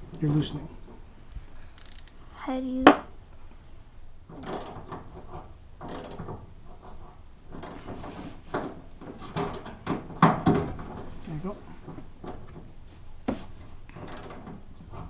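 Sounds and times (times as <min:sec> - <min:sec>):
tool clicking and scraping on clamp: 0:04.3 - 0:11.0, 0:13.9 - 0:15.0.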